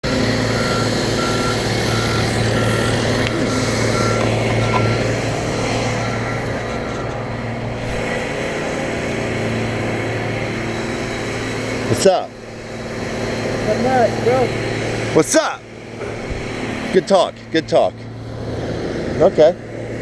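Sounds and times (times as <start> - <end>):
vehicle engine running: 0.0 - 20.0
reversing alarm beeping: 0.2 - 7.4.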